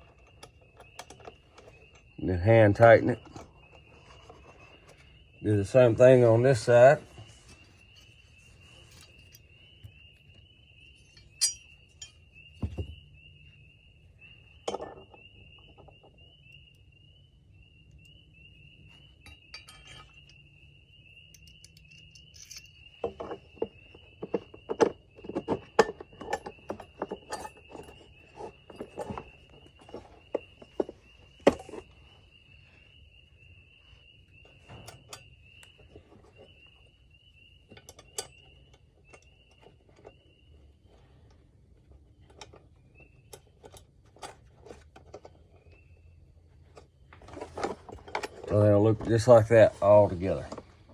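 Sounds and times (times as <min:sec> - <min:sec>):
insect chirring: 0:00.0 - 0:50.9
metallic clinks and knocks: 0:10.8 - 0:13.0, 0:14.6 - 0:16.2, 0:19.2 - 0:20.5, 0:21.2 - 0:32.0, 0:37.7 - 0:40.2, 0:46.7 - 0:49.3.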